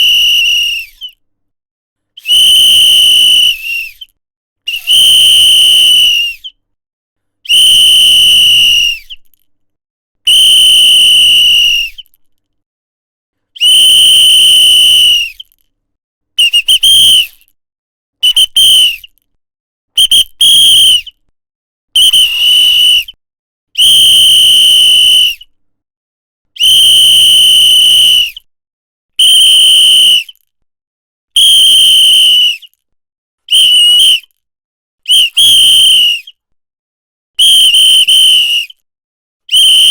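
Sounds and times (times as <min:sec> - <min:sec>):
whistle blasts: 0:00.0 - 0:01.2, 0:02.2 - 0:04.1, 0:04.7 - 0:06.5, 0:07.5 - 0:09.3, 0:10.3 - 0:12.1, 0:13.6 - 0:15.5, 0:16.4 - 0:17.4, 0:18.2 - 0:19.1, 0:20.0 - 0:21.2, 0:22.0 - 0:23.2, 0:23.8 - 0:25.4, 0:26.6 - 0:28.4, 0:29.2 - 0:30.4, 0:31.4 - 0:32.7, 0:33.5 - 0:34.3, 0:35.1 - 0:36.4, 0:37.4 - 0:38.8, 0:39.5 - 0:39.9.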